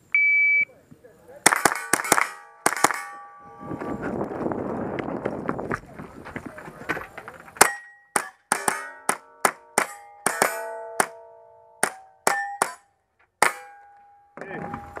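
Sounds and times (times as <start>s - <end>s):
rapid gunshots: 1.5s - 3.1s
steel target ringing: 1.5s - 3.7s, 7.6s - 15.0s.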